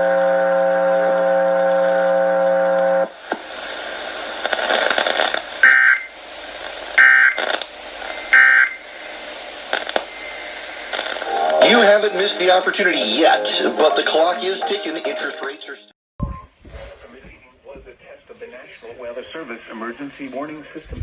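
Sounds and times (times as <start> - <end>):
background hiss: 3.1 - 15.8.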